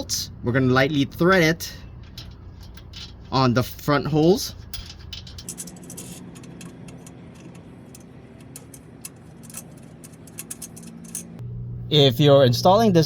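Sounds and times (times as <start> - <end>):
metallic clicking of bolts threading: 1.9 - 3.4, 4.1 - 11.4.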